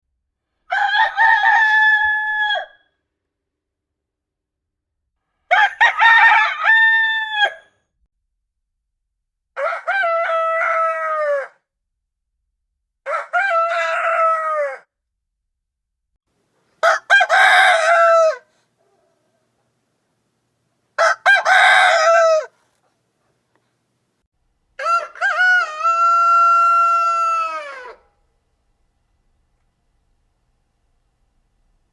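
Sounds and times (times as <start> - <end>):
rooster crowing: 0.7 - 2.9, 5.5 - 7.7, 9.6 - 11.6, 13.1 - 14.9, 16.8 - 18.5, 21.0 - 22.5, 24.8 - 28.1.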